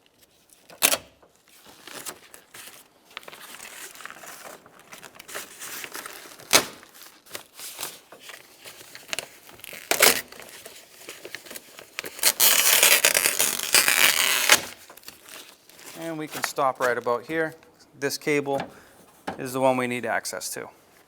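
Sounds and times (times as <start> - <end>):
plastic sheet crinkling and tearing: 0.0 - 17.4.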